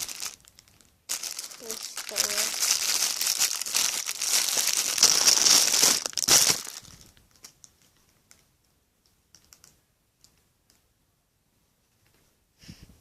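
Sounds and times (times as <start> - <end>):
plastic bag crinkling: 0.0 - 8.5, 9.3 - 9.8.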